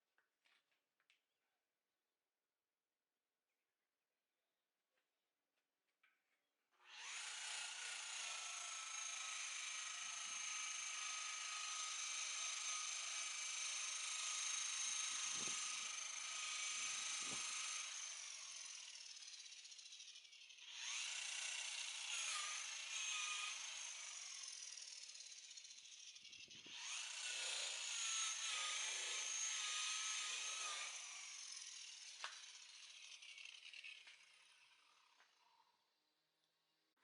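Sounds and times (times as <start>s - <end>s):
electric polisher motor whining: 6.8s - 18.9s, 22.0s - 24.0s, 25.4s - 35.4s.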